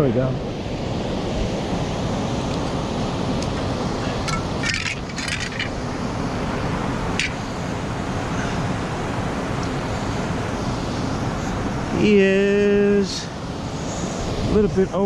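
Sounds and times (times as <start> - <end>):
wind on microphone: 0.0 - 15.0.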